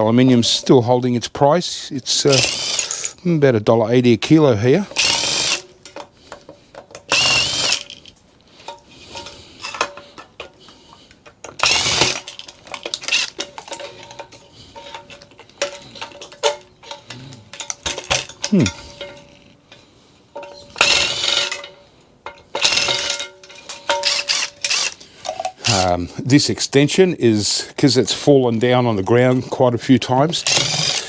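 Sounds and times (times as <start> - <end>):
handheld drill whirring: 2.3 - 3.2, 4.9 - 5.7, 7.0 - 8.1, 11.5 - 13.4, 20.8 - 21.6, 22.6 - 23.2, 24.0 - 25.8, 30.4 - 31.0
small metallic clicks and knocks: 4.9 - 26.0.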